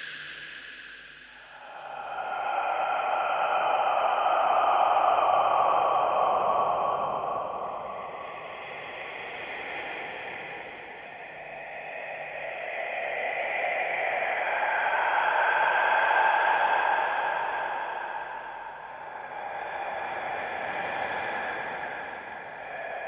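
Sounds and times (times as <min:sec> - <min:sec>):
whispered hissing breathing: 0:00.0 - 0:08.2.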